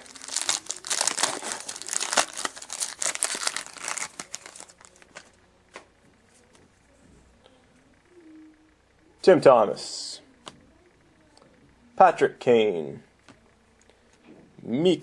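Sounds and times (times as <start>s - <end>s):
wrapper tearing and crinkling: 0.0s - 5.3s.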